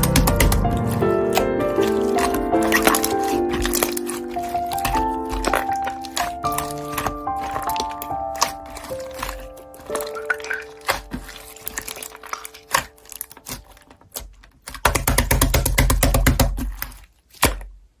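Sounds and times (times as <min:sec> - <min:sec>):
soft background music: 0:00.0 - 0:14.1
slime squishing and popping: 0:00.0 - 0:18.0.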